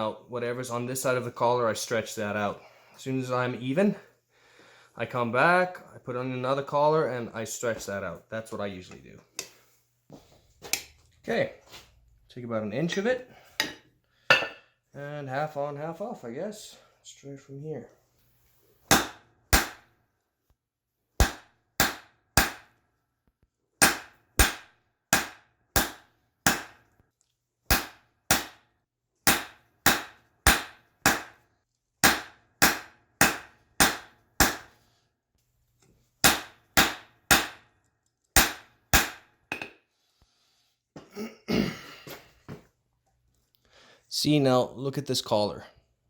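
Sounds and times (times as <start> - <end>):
hammer striking spike on anvil: 21.2 - 22.7, 23.8 - 26.8, 27.7 - 28.6, 29.3 - 31.4, 32.0 - 34.7, 36.2 - 37.6, 38.4 - 39.7.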